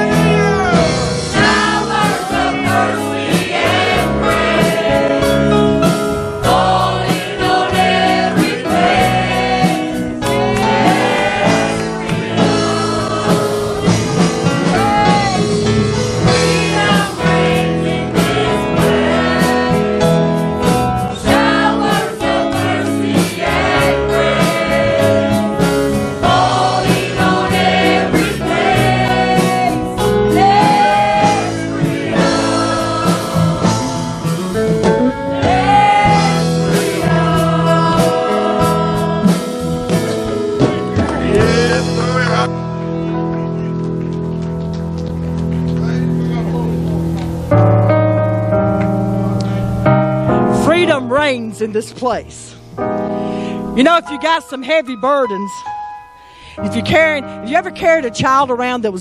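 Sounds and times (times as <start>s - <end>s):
voices singing together: 0.0s - 42.5s
steady drum beat: 0.0s - 42.6s
live band playing: 0.0s - 59.0s.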